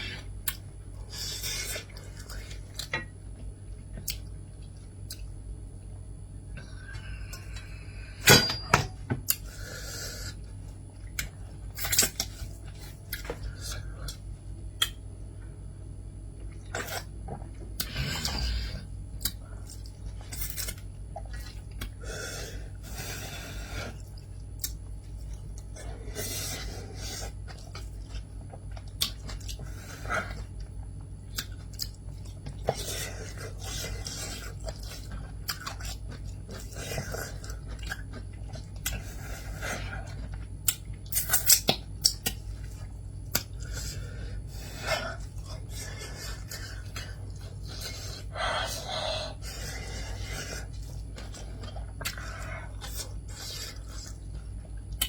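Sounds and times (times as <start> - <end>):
chewing: 16.5 - 55.0.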